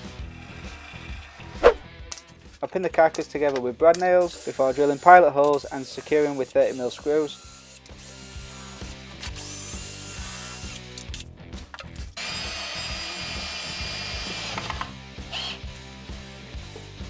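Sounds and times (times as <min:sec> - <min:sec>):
power drill drilling into wood: 0:04.2 - 0:10.9, 0:12.2 - 0:15.6.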